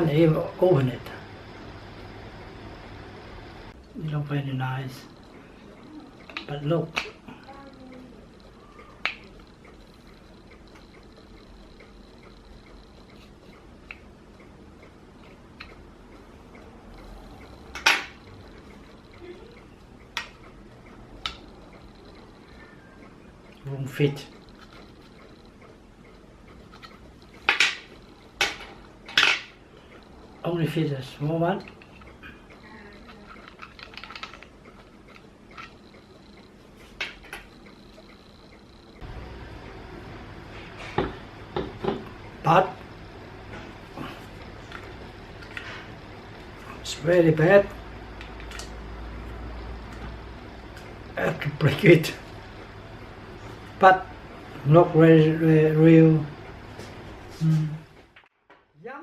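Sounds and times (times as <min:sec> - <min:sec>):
plastic toy bank clicks: 0:33.2 - 0:34.5.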